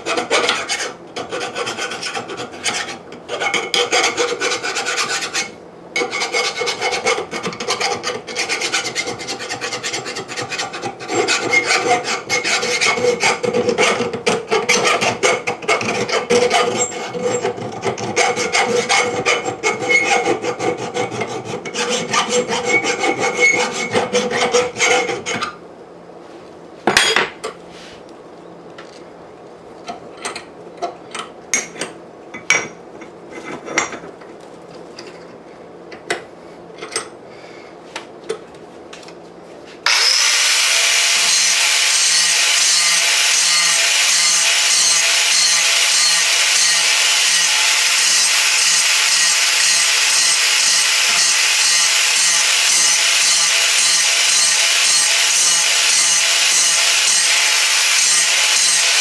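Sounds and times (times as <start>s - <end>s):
grinder grinding steel: 14.7s - 25.4s, 39.9s - 59.0s.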